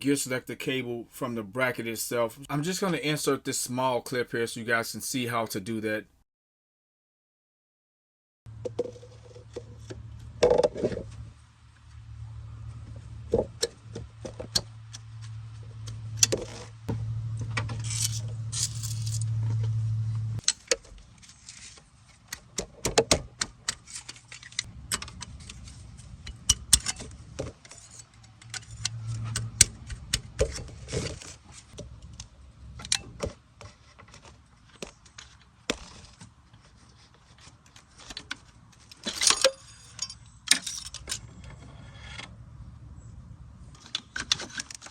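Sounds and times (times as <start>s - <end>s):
low hum: 8.5s - 20.5s, 24.4s - 33.2s
small metal parts clicking: 17.8s - 19.3s, 23.4s - 31.2s, 39.0s - 41.3s.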